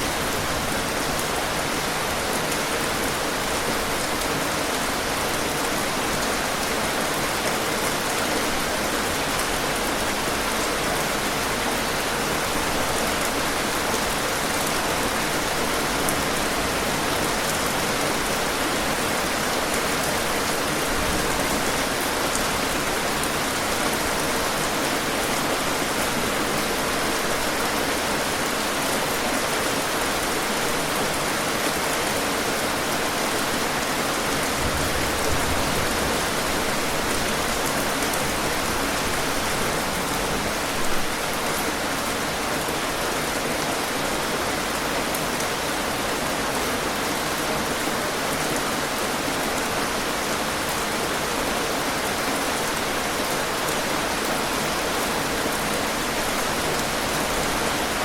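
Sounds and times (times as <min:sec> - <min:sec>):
heavy rain falling: 0:00.0 - 0:58.0.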